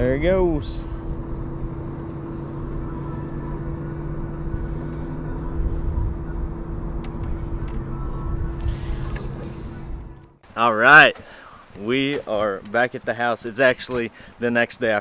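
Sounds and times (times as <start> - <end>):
boat motor running: 0.0 - 11.0.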